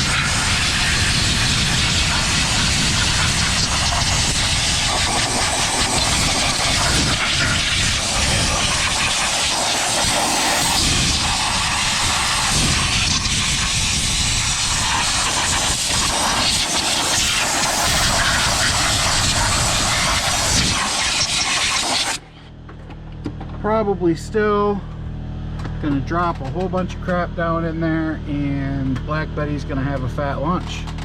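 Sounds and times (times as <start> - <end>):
air blow gun hissing: 0.0 - 22.3.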